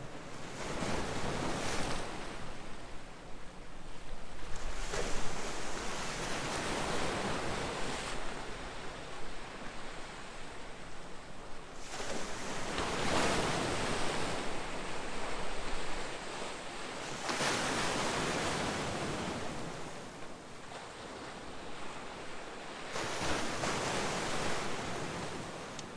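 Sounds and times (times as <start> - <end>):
wind: 0.0 - 25.9.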